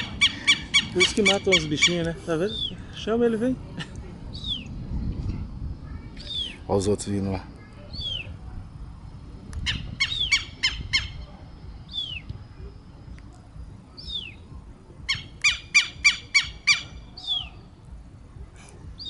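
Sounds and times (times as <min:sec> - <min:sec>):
lapwings squawking: 0:00.0 - 0:02.8, 0:09.6 - 0:11.2, 0:15.1 - 0:17.6.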